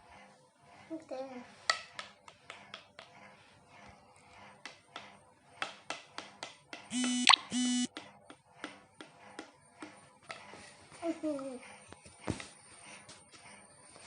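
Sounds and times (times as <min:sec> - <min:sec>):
short electronic beeps: 0:06.9 - 0:07.9.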